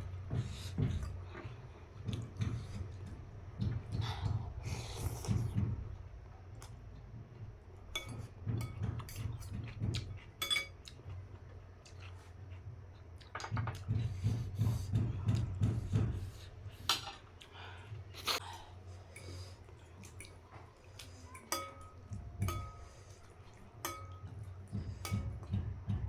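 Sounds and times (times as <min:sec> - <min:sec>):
rhythmic chewing: 0:00.0 - 0:26.0
spoon clinking against bowl: 0:08.0 - 0:09.2, 0:10.4 - 0:10.8, 0:21.5 - 0:23.1, 0:23.8 - 0:24.5.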